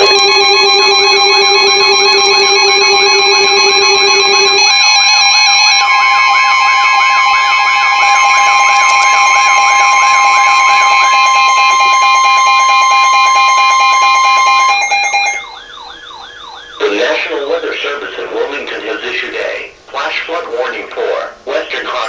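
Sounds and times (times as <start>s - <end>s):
steady two-tone alarm: 0.0s - 22.0s
voice message: 16.8s - 22.0s.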